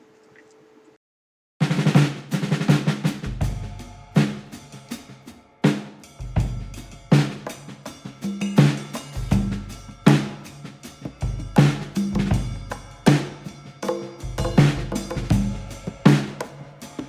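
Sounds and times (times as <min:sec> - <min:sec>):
drum beat with deep bass: 0:01.6 - 0:17.0.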